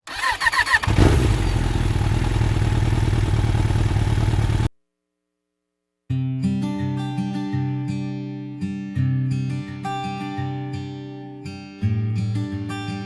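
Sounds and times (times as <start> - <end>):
petrol generator engine running: 0.1 - 4.7
acoustic guitar music: 6.1 - 13.0.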